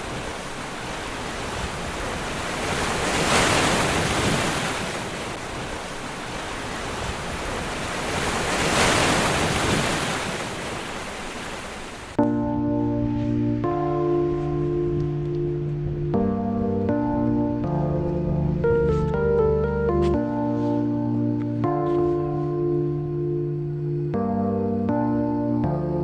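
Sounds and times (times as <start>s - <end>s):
ocean surf washing onto beach: 0.0s - 12.2s.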